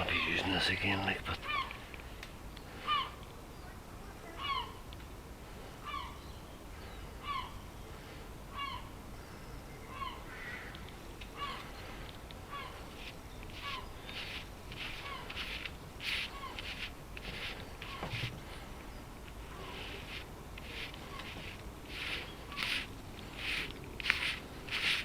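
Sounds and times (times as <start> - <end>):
rustling or scraping: 11.5 - 25.0.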